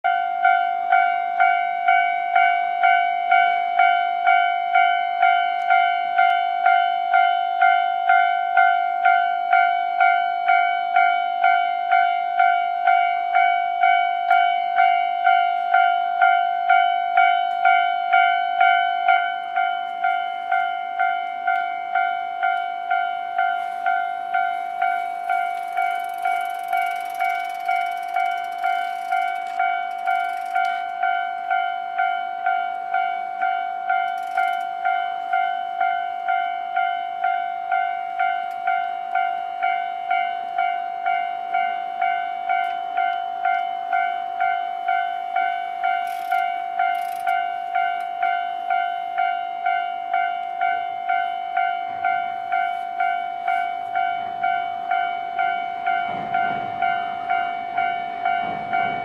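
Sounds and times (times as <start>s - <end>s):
level-crossing bell dinging: 0.1s - 59.0s
train rumble: 19.4s - 36.9s, 50.0s - 59.0s.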